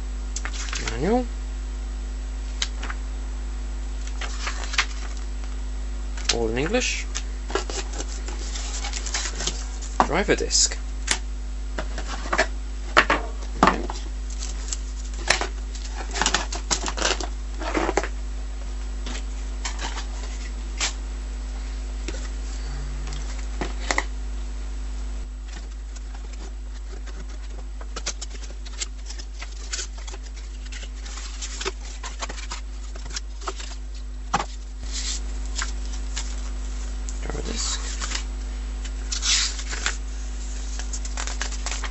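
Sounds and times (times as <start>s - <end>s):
steady low hum: 0.0s - 41.9s
plastic and cardboard rustling: 4.0s - 5.3s, 6.2s - 18.2s, 19.0s - 21.0s, 25.2s - 38.3s, 38.9s - 41.9s.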